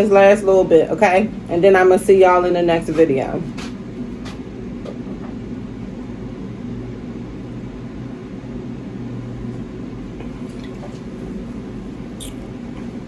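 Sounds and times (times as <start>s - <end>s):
steady low hum: 0.0s - 13.0s
person gulping drink: 10.2s - 11.3s.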